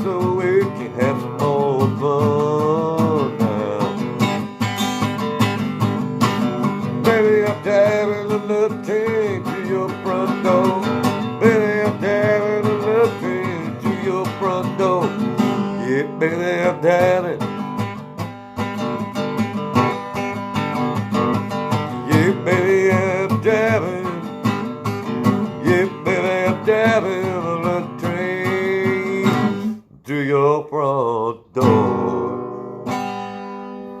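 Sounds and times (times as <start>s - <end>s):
acoustic guitar strumming: 0.0s - 34.0s
wavering wordless melody: 6.2s - 17.8s.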